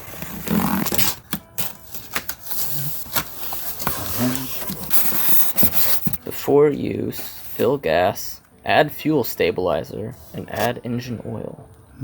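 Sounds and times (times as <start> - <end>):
cardboard packaging rustling: 0.0 - 6.3.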